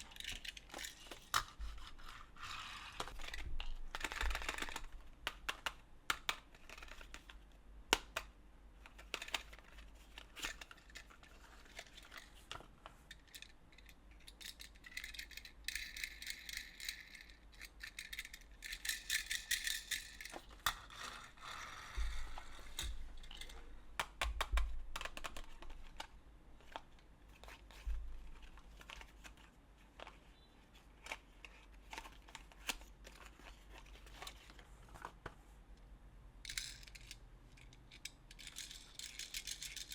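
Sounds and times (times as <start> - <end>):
plastic toy pieces clicking: 0.0 - 8.3, 8.9 - 12.3, 13.1 - 21.7, 22.3 - 26.1, 36.5 - 39.9.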